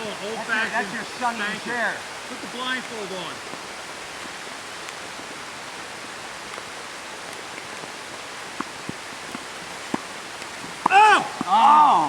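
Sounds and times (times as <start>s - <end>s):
steady rain: 0.0s - 12.0s.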